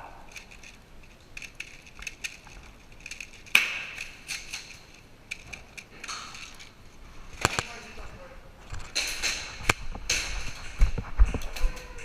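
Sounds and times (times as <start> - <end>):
loud crack: 0.0 - 8.0.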